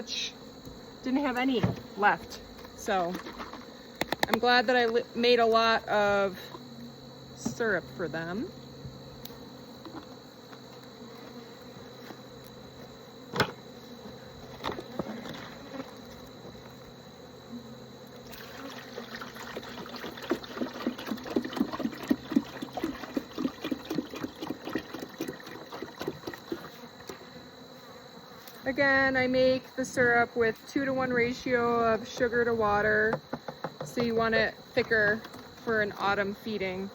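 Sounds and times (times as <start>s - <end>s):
honeybees buzzing: 0.0s - 36.9s
syrup gulping as poured: 18.3s - 26.7s.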